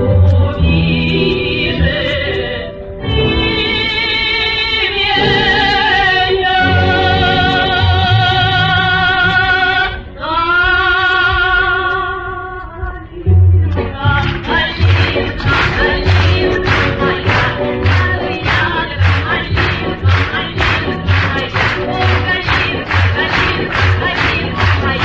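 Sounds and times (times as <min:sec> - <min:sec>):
person singing with vibrato: 0:00.0 - 0:25.0
pulsing instrumental accompaniment: 0:13.4 - 0:25.0.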